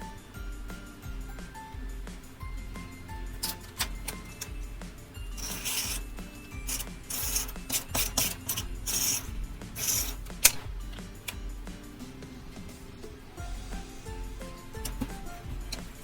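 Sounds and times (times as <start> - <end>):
soft background music: 0.0 - 16.0
paper rubbing and scratching: 5.4 - 10.5.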